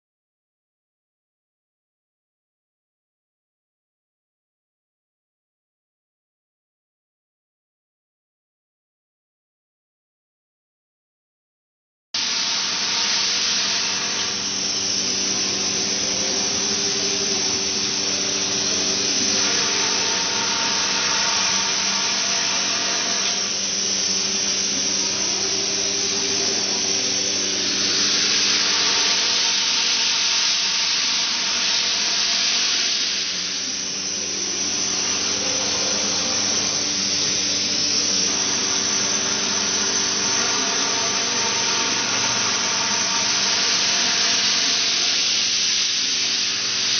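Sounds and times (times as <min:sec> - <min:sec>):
high-pitched machine hiss: 0:12.2 - 0:46.9
motor hum: 0:12.2 - 0:46.9.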